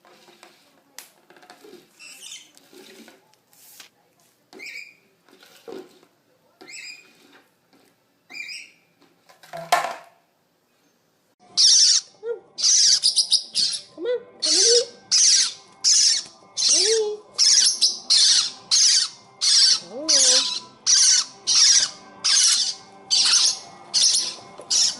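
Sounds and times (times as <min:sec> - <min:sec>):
parrot chirping: 0:02.0 - 0:02.6, 0:04.6 - 0:05.0, 0:06.6 - 0:07.1, 0:08.3 - 0:08.9, 0:11.4 - 0:24.9
parrot screeching: 0:08.3 - 0:08.8, 0:11.5 - 0:24.9.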